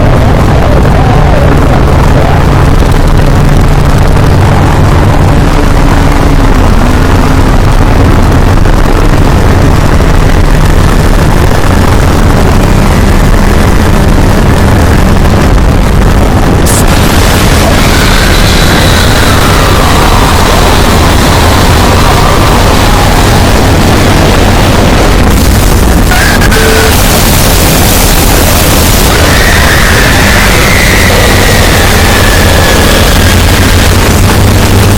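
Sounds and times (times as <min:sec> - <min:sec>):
steady rumbling roar: 0:00.0 - 0:34.9.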